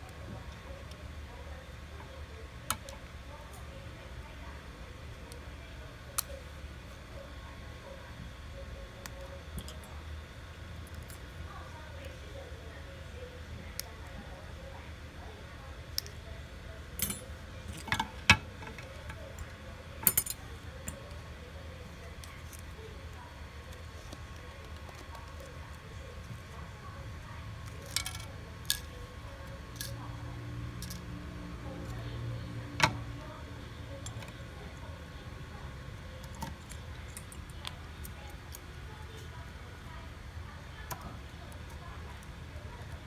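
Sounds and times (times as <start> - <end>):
low steady hum: 0.0 - 43.0
hand tools clicking on phone parts: 17.0 - 19.0, 20.0 - 21.1.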